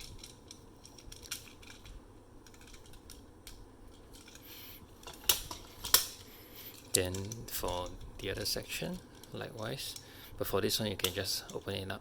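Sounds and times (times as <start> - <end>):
plastic toy parts clicking: 0.0 - 4.4.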